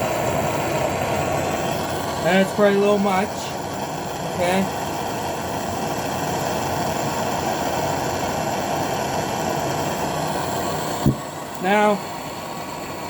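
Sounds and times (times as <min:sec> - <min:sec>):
torch flame hissing: 0:00.0 - 0:13.0
torch shutoff click: 0:08.9 - 0:13.0.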